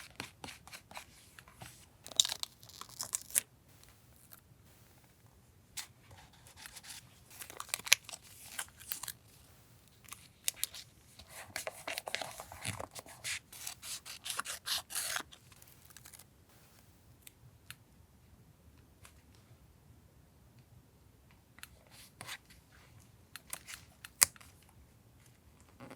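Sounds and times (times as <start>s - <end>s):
paper rustling: 5.8s - 16.2s
scissors snipping paper: 10.1s - 16.2s.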